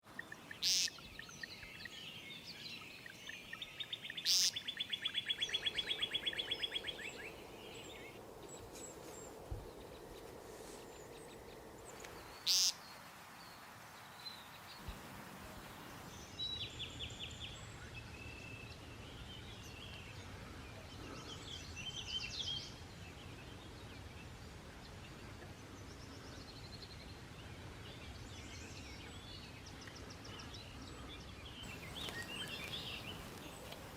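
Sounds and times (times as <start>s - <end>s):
birds chirping: 0.0s - 14.9s, 28.5s - 33.9s
fast bird trill: 0.6s - 1.1s.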